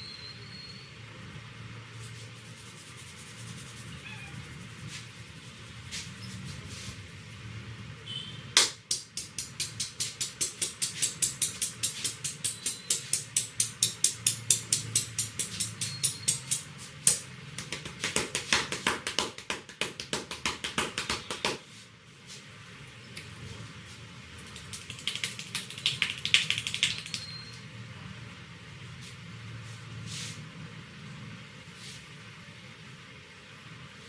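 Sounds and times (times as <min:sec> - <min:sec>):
hands slapping a head: 0:08.6 - 0:21.7, 0:24.4 - 0:27.2.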